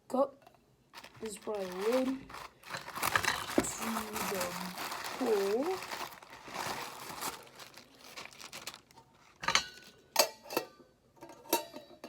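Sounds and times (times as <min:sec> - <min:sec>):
plastic packaging crinkling: 0:00.9 - 0:10.0.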